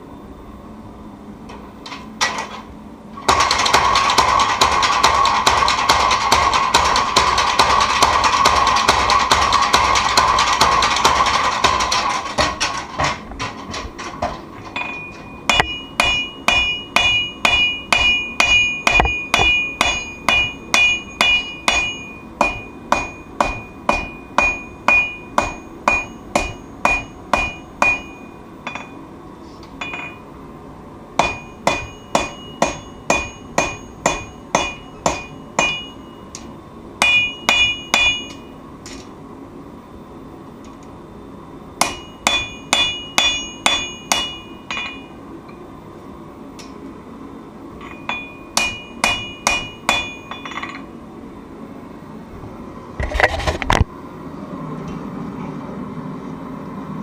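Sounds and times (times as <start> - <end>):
hammer striking steel on anvil: 3.3 - 29.0, 29.8 - 30.3, 31.2 - 39.0, 41.8 - 45.6, 47.8 - 50.9.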